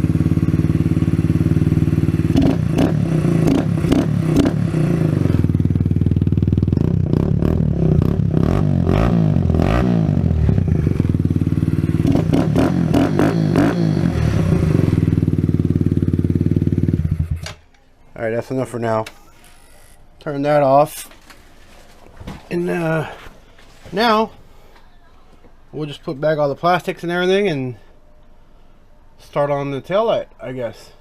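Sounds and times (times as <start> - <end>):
motorcycle engine idling: 0.0 - 8.4, 10.2 - 17.4.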